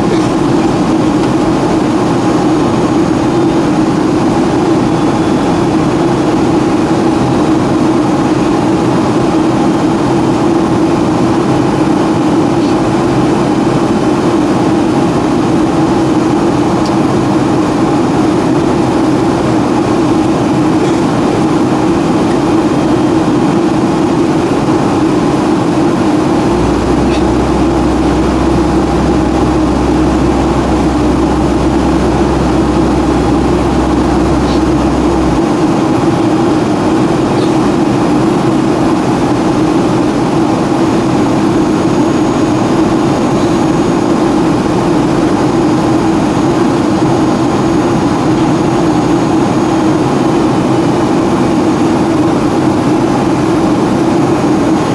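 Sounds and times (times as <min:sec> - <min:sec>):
airplane cabin jet noise: 0:00.0 - 0:54.9
deep low hum: 0:26.1 - 0:37.5.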